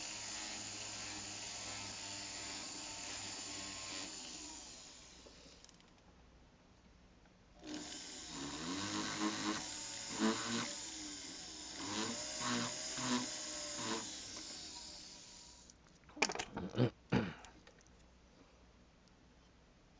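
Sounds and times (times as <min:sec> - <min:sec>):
rotary power tool whirring: 0:00.0 - 0:05.8, 0:07.6 - 0:15.7.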